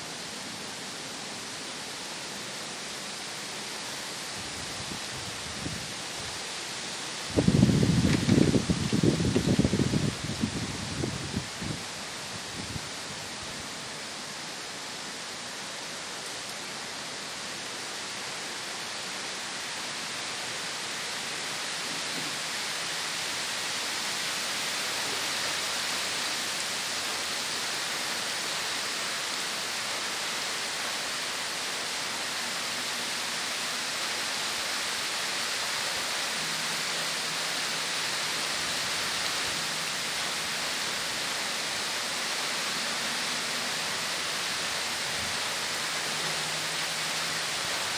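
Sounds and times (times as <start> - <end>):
heavy rain pouring: 0.0 - 47.9
strong wind: 4.3 - 6.5, 7.1 - 13.8.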